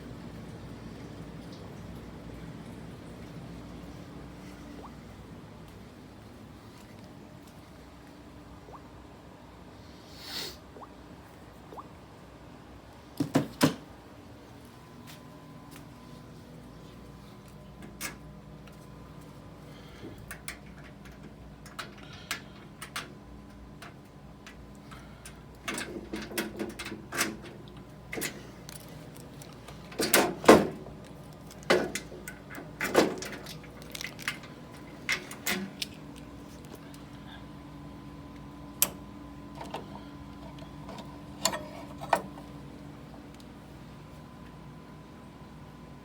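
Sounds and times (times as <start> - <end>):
faint electrical hum: 0.0 - 46.0
clicks and rattles of handling: 20.3 - 24.6, 25.2 - 37.0.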